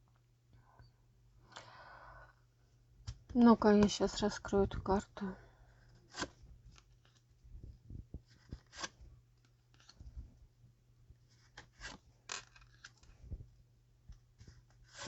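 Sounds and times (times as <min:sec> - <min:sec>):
low steady hum: 0:00.0 - 0:15.0
cards scraping and tapping: 0:06.0 - 0:07.2, 0:08.2 - 0:10.0, 0:11.4 - 0:13.2, 0:14.4 - 0:15.0.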